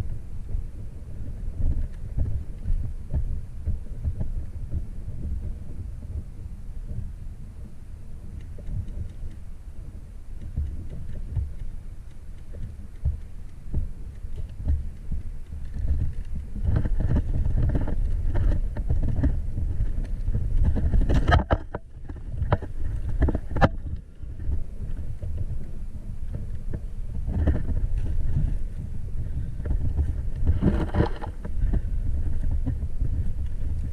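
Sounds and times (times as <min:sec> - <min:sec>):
wind buffeting microphone: 0:00.0 - 0:33.9
rustling movement: 0:10.6 - 0:33.9.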